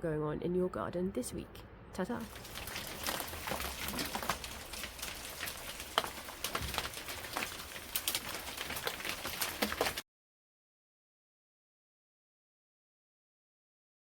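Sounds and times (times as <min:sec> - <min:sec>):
rain pattering: 0:02.1 - 0:10.0.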